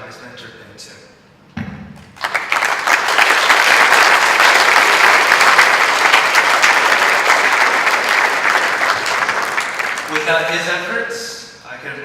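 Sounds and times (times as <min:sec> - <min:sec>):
audience applauding: 0:02.0 - 0:10.9.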